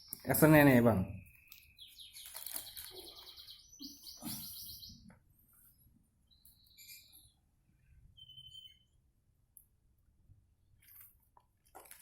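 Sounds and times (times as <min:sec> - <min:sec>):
small songbird chirping: 0:00.0 - 0:09.2.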